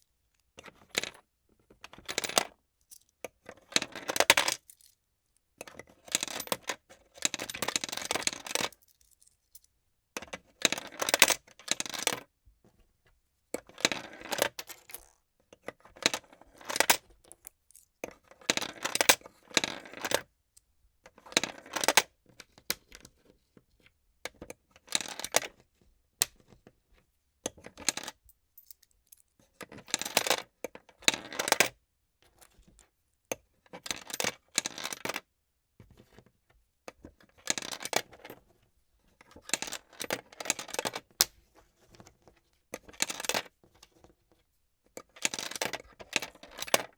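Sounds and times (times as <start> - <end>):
coins rattling in plastic sorter: 33.8 - 35.1, 45.2 - 46.9.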